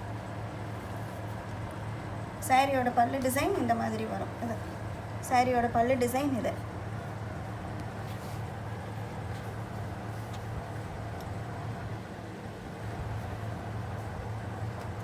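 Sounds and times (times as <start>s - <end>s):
broad background noise: 0.0s - 15.0s
steady low hum: 0.0s - 15.0s.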